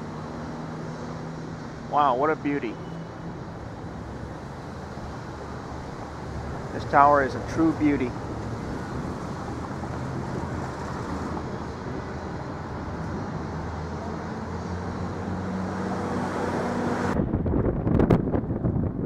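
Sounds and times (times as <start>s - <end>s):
city street traffic: 0.0s - 17.4s
wind buffeting the microphone: 17.0s - 19.0s.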